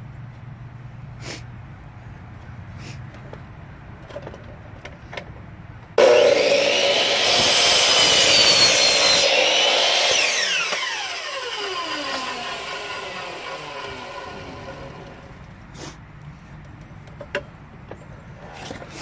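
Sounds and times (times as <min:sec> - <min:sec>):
power cutting tool running: 0:06.0 - 0:15.4.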